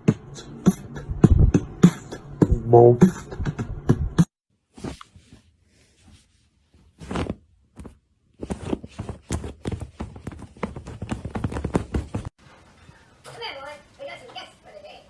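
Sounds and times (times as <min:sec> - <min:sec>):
footsteps pattering: 0:07.8 - 0:14.7.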